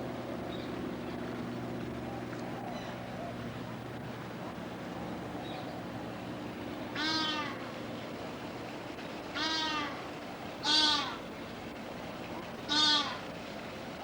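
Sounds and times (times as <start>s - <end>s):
animal meow-like calls: 7.0s - 7.6s, 9.4s - 10.0s, 10.6s - 11.2s, 12.7s - 13.2s.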